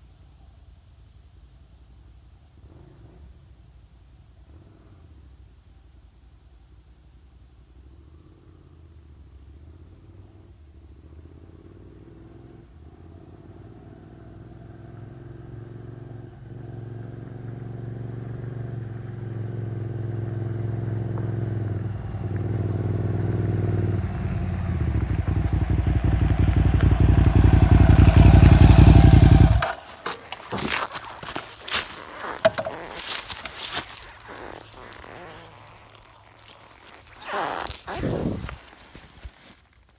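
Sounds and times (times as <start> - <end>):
motorcycle engine revving: 11.1 - 39.6
clicks and scrapes: 29.4 - 39.9.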